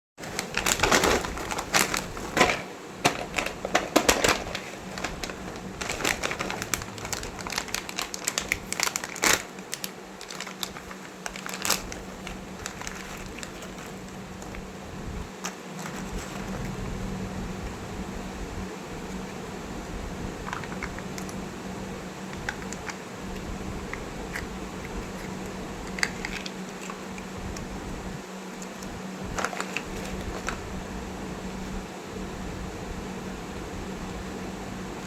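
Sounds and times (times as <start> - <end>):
packaging crinkling and crackling: 0.2 - 16.8, 20.4 - 21.5, 22.2 - 30.9
steady low hum: 0.2 - 35.0.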